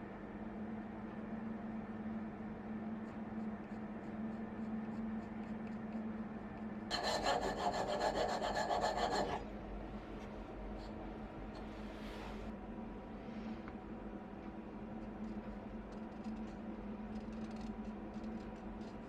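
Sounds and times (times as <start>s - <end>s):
steady low hum: 0.0s - 19.0s
handsaw cutting wood: 6.9s - 9.4s.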